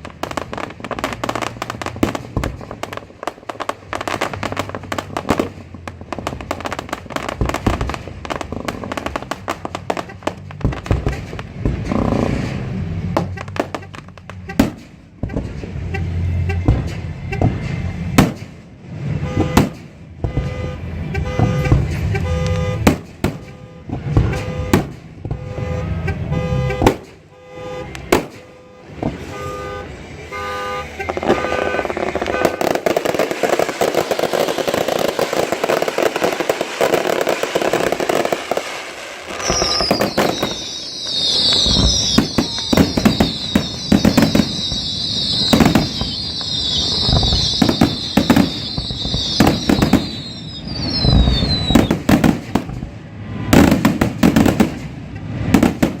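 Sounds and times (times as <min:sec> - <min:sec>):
fireworks bangs: 0:00.0 - 0:56.0
fireworks crackling: 0:00.0 - 0:56.0
falling whistle: 0:39.4 - 0:51.9.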